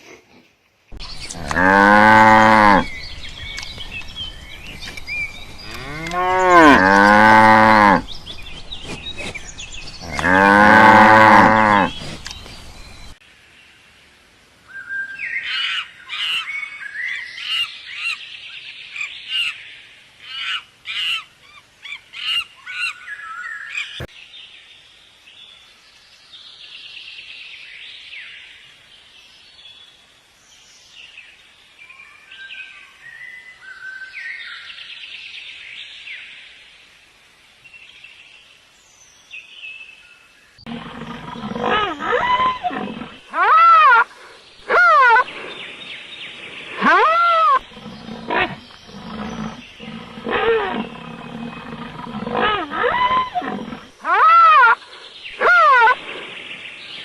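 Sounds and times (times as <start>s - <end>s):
deep wavering animal call: 40.7s - 44.1s, 46.8s - 54.8s
high chirping animal calls: 46.8s - 56.0s.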